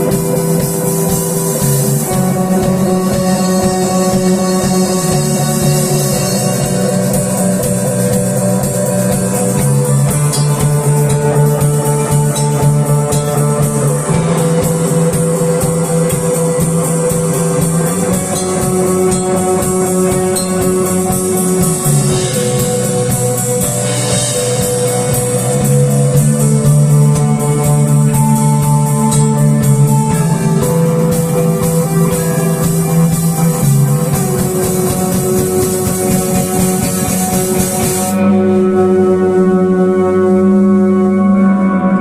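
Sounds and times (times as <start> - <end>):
instrumental rock music: 0.0 - 42.0.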